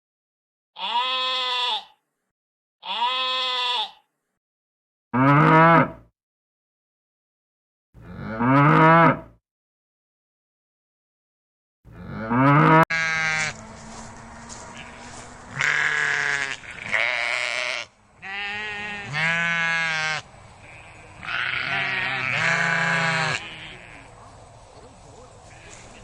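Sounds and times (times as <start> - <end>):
sheep bleating: 0.8 - 2.0, 2.8 - 4.1, 12.0 - 24.1, 25.4 - 26.0
cow mooing: 5.2 - 6.0, 8.0 - 9.3, 11.9 - 24.1.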